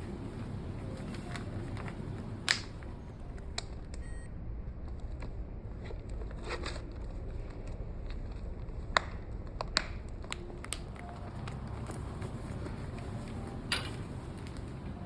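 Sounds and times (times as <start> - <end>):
low background noise: 0.0 - 15.0
faint electronic beep: 3.0 - 4.4.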